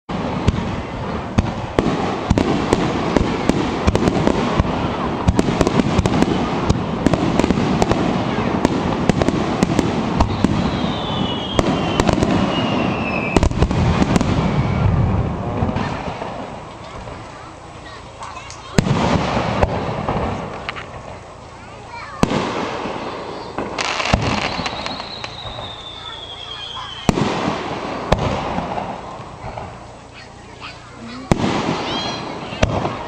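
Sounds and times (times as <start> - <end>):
continuous rumble: 0.1 - 33.0
fireworks bangs and crackles: 0.1 - 33.0
falling whistle: 10.3 - 13.4, 14.4 - 15.0, 24.3 - 27.1.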